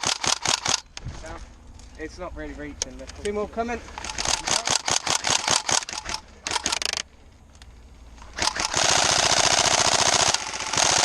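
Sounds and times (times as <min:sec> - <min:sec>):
airsoft rifle firing: 0:00.0 - 0:00.9, 0:04.0 - 0:07.0, 0:08.3 - 0:11.0.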